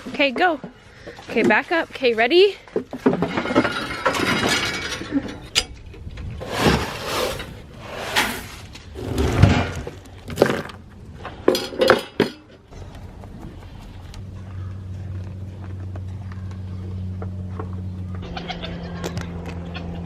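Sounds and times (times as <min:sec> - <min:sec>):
clinking and clattering: 0:03.0 - 0:05.8.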